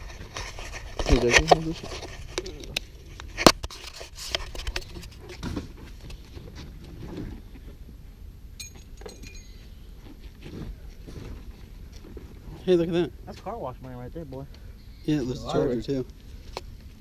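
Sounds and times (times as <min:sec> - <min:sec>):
scattered clicks and clinks: 0:08.6 - 0:09.6
faint metallic ring: 0:08.6 - 0:09.8.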